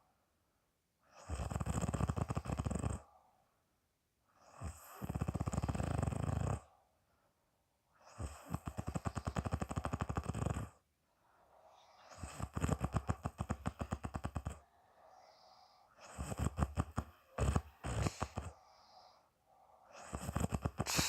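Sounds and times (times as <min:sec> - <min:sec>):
woman snoring: 0:01.2 - 0:03.2, 0:04.4 - 0:06.8, 0:08.0 - 0:10.8, 0:11.7 - 0:21.0.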